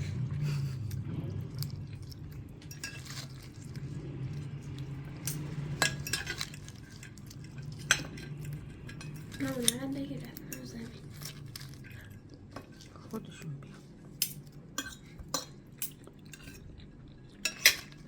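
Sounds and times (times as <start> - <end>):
low steady hum: 0.0 - 18.0
cutlery and dishes clinking: 2.6 - 3.8, 5.1 - 11.8, 14.1 - 18.0.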